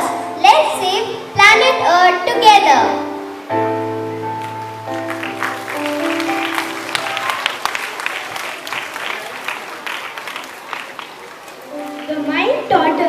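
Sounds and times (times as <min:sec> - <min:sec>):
background music chords: 0:00.0 - 0:07.4
children applauding: 0:04.4 - 0:12.7.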